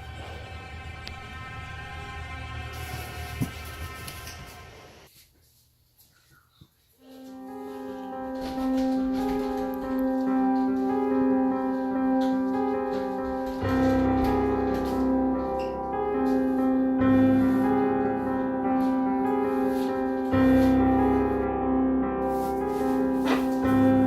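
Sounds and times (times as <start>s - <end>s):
held piano chords: 7.0s - 24.0s.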